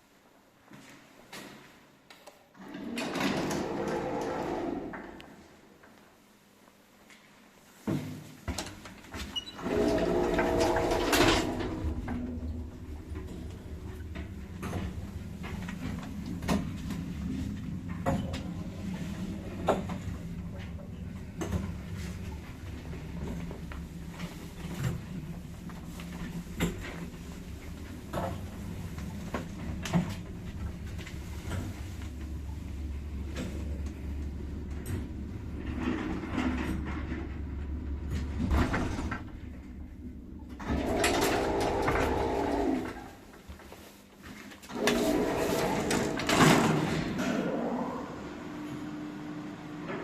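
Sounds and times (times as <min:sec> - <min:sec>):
lift low hum: 0:09.6 - 0:43.7.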